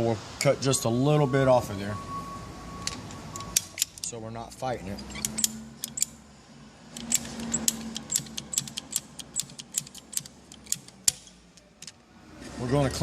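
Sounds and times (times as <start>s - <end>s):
pipe cutter clicking: 7.0s - 11.3s.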